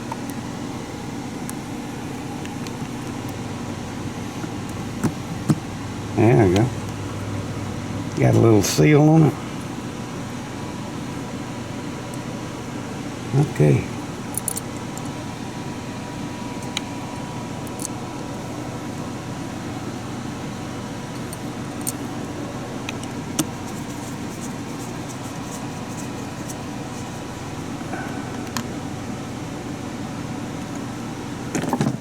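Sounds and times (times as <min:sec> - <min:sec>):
fan-like hum and hiss: 0:00.0 - 0:32.0
small metal parts clicking: 0:14.3 - 0:14.7.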